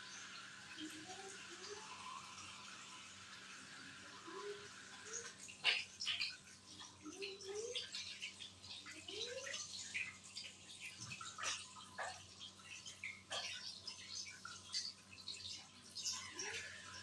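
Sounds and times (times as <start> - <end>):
water splashing and dripping: 4.8 - 17.0.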